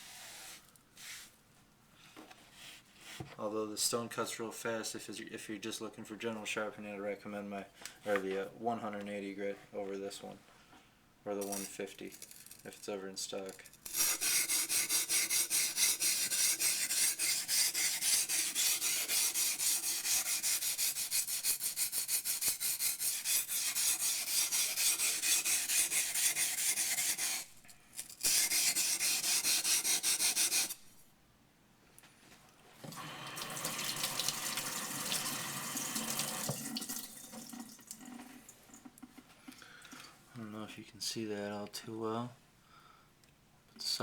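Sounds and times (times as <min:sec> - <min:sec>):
blade grinding on whetstone: 0:13.8 - 0:30.8
running water splashing: 0:33.3 - 0:38.4.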